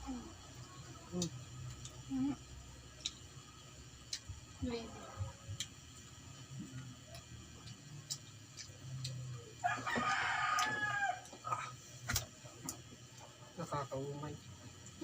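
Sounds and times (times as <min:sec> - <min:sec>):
rooster crowing: 0:09.6 - 0:11.7.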